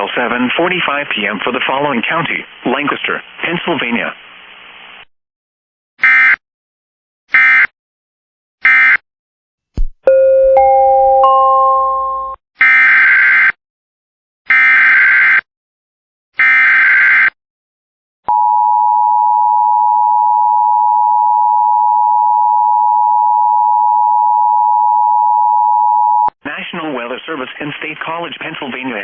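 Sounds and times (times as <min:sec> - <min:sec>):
three-note electronic chime: 0:10.1 - 0:12.4.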